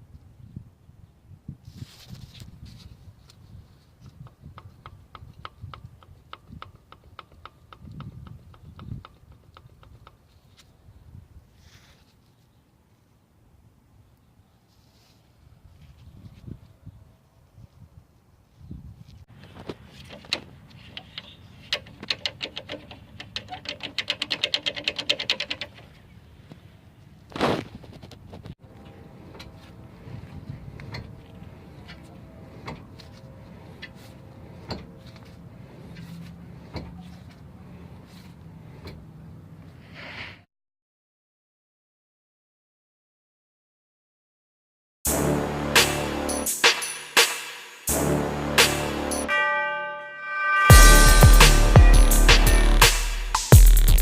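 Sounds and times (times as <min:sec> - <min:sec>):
rapid sharp mechanical clicks: 0:21.7 - 0:25.8.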